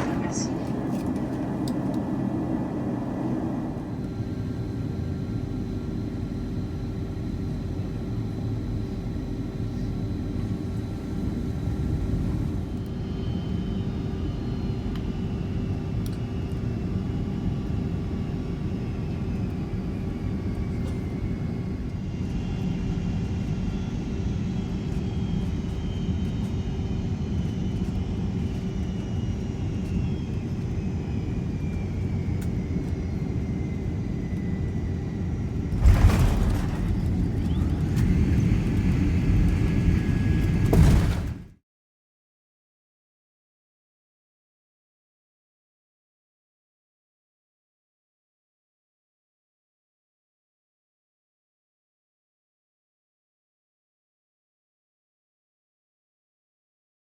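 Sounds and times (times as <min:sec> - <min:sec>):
jet engines and airflow roar: 0:00.0 - 0:41.6.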